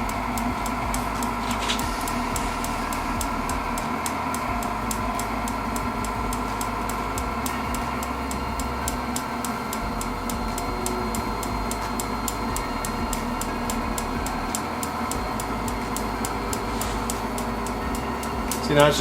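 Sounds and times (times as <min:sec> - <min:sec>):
heater fan and burner rushing: 0:00.0 - 0:19.0.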